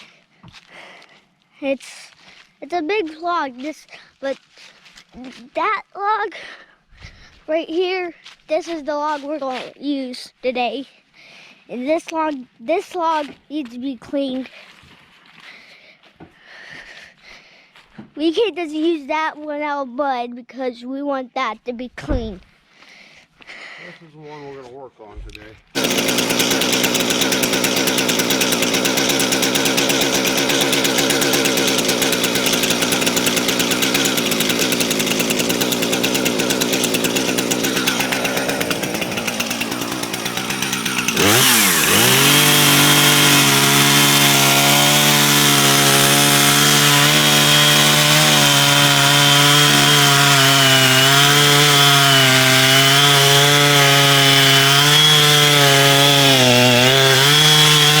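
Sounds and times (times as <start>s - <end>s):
chainsaw cutting through log: 25.8s - 58.0s.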